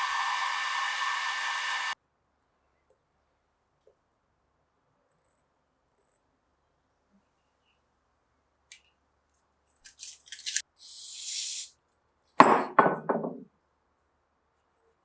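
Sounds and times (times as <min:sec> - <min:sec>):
hiss: 0:00.0 - 0:02.0, 0:10.8 - 0:11.7.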